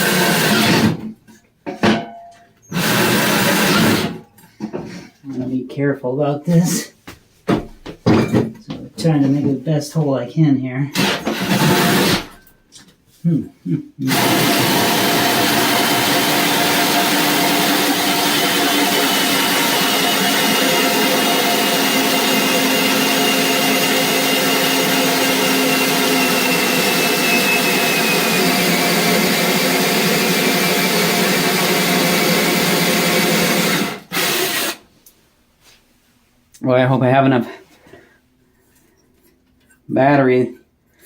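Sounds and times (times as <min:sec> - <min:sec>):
cordless drill boring through wood: 0:00.0 - 0:01.0, 0:02.7 - 0:04.2, 0:11.0 - 0:12.4, 0:14.1 - 0:34.8
shop vacuum sucking: 0:00.0 - 0:01.1, 0:02.7 - 0:04.2, 0:11.0 - 0:12.4, 0:14.0 - 0:34.8.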